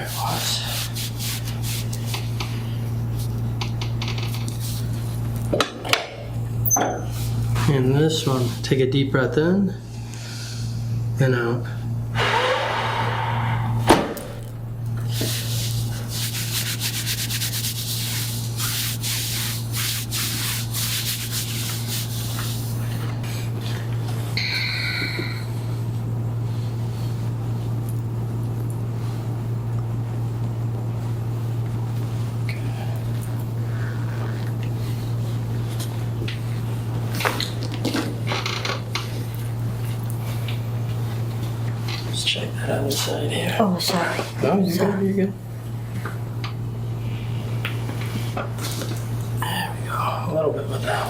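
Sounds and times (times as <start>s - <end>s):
steady low hum: 0.0s - 51.0s
rubbing and scraping: 15.1s - 23.0s.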